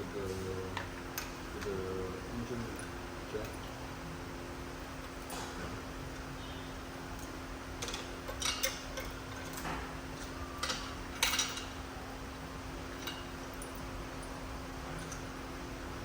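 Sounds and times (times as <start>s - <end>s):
steady low hum: 0.0s - 16.0s
metal clinks and clanks: 7.8s - 11.8s, 13.0s - 15.3s.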